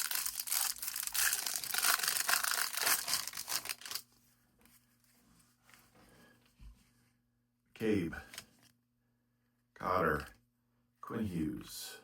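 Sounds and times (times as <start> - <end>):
foil wrapper tearing and crinkling: 0.0 - 4.0
faint handling sounds: 0.1 - 7.3.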